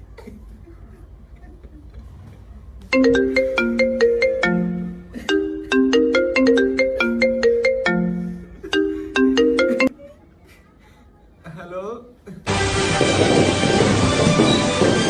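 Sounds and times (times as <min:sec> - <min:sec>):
phone ringtone marimba melody: 0:02.9 - 0:10.0.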